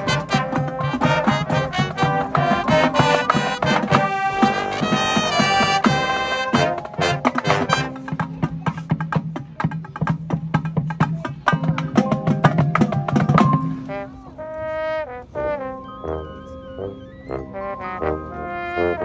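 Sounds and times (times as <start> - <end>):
marching band brass: 0.0 - 9.1, 11.6 - 19.0
marching band drums: 0.0 - 14.1.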